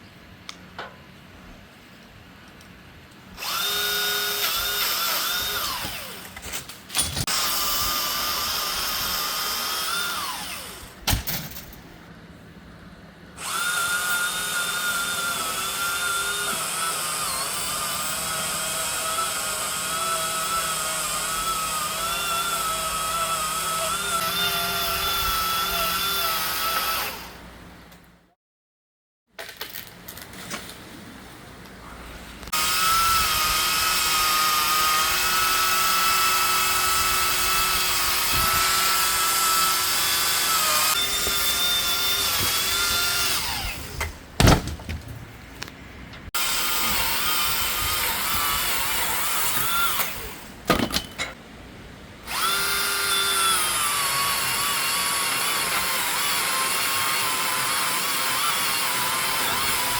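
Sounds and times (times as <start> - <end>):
electric chainsaw cutting wood: 3.4 - 6.4, 7.2 - 11.0, 13.4 - 27.4, 32.5 - 44.0, 46.4 - 50.5, 52.2 - 59.9.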